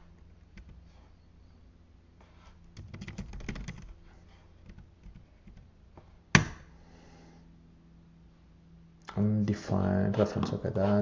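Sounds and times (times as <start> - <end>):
typing on computer keyboard: 2.8 - 3.9.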